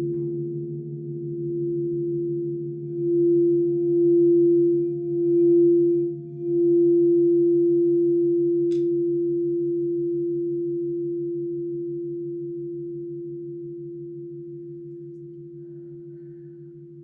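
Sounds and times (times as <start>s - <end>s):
singing bowl ringing: 0.0s - 17.0s
small click: 8.7s - 9.0s.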